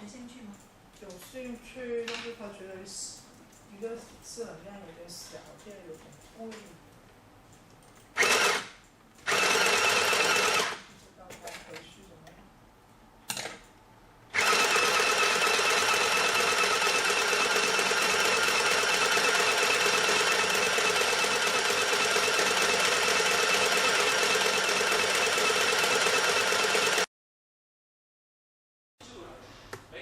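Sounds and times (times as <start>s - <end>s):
sewing machine running: 8.2s - 10.9s, 14.3s - 27.1s.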